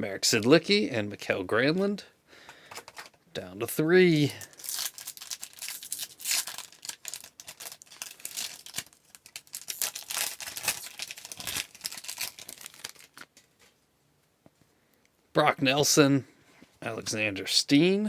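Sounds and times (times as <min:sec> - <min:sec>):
wrapper crinkling and tearing: 0:04.1 - 0:13.5.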